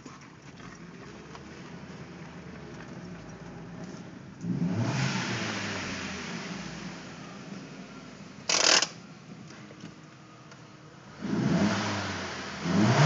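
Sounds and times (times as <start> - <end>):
turbocharged engine revving: 4.4 - 7.2, 11.2 - 13.0.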